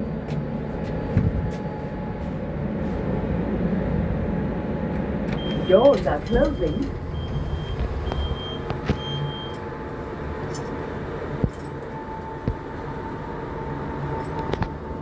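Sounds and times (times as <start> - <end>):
lift car humming: 0.0 - 15.0
steady whine: 0.0 - 15.0
lift door warning beeps: 5.2 - 9.6.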